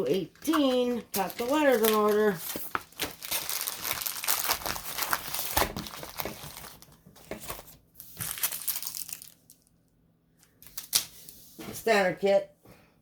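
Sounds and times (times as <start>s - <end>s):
plastic packaging crinkling: 0.1s - 9.7s.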